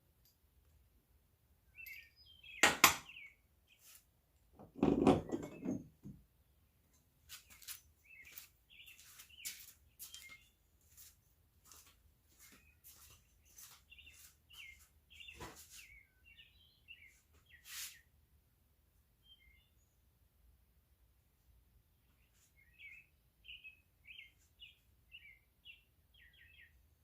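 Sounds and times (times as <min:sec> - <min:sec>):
birds chirping: 0:01.6 - 0:04.0, 0:07.3 - 0:11.1, 0:12.3 - 0:18.1, 0:22.0 - 0:26.9
metal clanks and clinks: 0:04.8 - 0:06.0.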